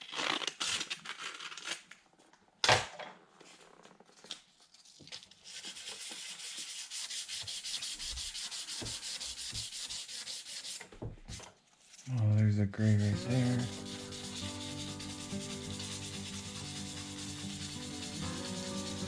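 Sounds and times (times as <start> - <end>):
sandpaper rubbing on paint: 5.4 - 10.9, 13.0 - 19.0.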